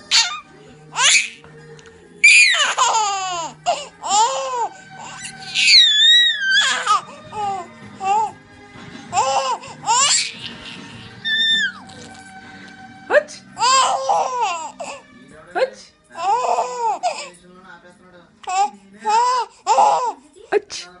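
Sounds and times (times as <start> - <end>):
background music: 0.0 - 21.0
baby squealing and laughing: 0.1 - 0.4, 1.0 - 1.4, 2.2 - 8.3, 9.1 - 12.2, 13.6 - 14.9, 18.5 - 20.1.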